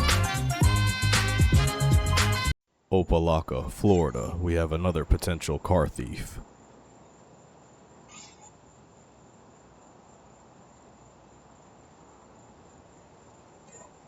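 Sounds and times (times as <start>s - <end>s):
microphone hiss: 2.8s - 14.0s.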